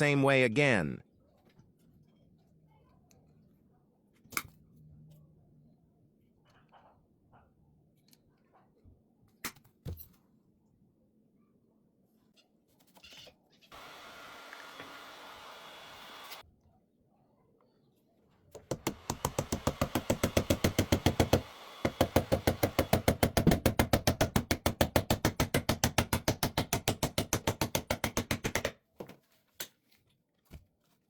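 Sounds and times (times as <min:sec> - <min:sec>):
rapid sharp knocks: 0:18.7 - 0:28.7.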